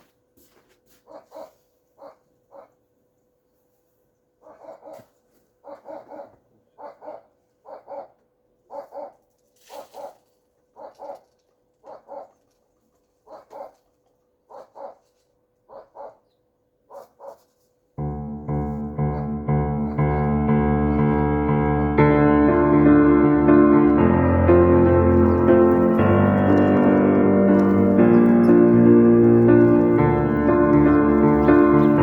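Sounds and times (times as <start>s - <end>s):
animal calling repeatedly: 1.0s - 2.8s, 4.4s - 12.5s, 13.2s - 17.5s, 19.0s - 21.5s
music: 18.0s - 32.0s.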